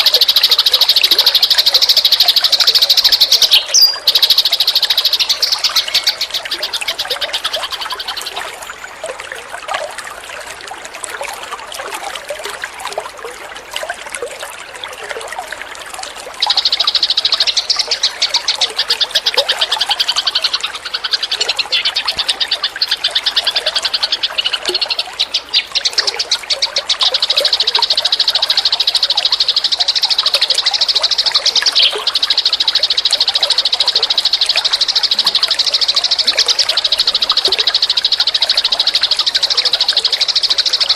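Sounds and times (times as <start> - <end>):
sparrows chirping: 0.0 - 8.4, 16.5 - 37.0.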